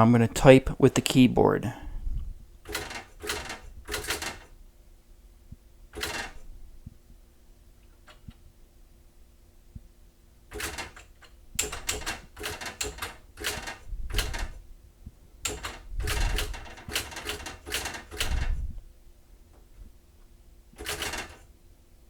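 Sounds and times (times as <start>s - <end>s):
faint steady hum: 0.0s - 22.0s
electronic typewriter typing: 2.7s - 4.5s, 6.0s - 6.4s, 10.5s - 14.6s, 15.4s - 18.6s, 20.8s - 21.5s.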